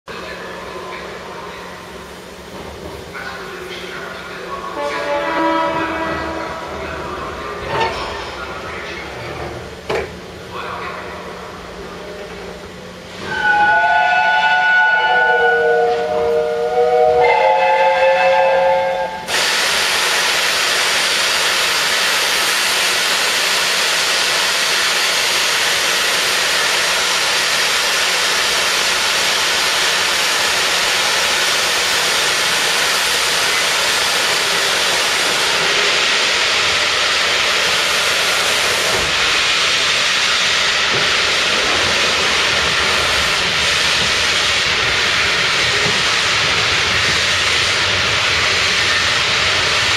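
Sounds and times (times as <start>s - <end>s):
steam locomotive whistle chord: 13.3s - 19.3s
steam hissing: 15.6s - 49.9s.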